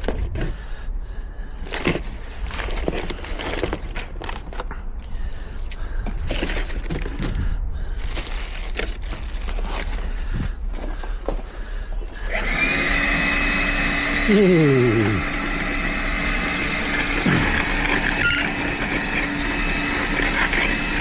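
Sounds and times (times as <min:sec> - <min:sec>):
constant low rumble: 0:00.0 - 0:12.3
tools and parts being handled: 0:01.6 - 0:07.4, 0:08.0 - 0:12.3.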